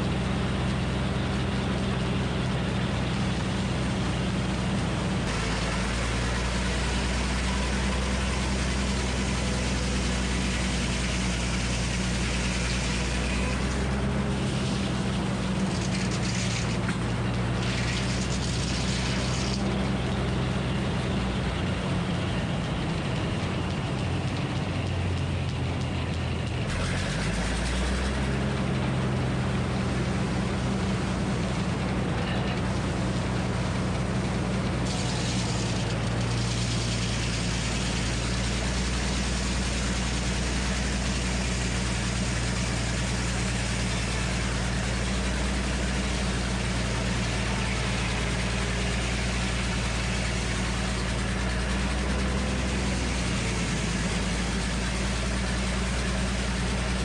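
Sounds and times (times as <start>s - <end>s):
engine running steadily: 0.0s - 57.0s
hiss: 34.9s - 57.0s.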